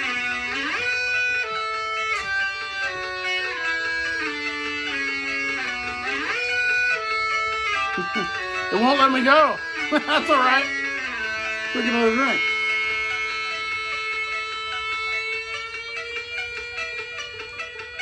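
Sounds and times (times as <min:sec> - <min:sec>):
rock music from vinyl record: 0:00.0 - 0:17.9.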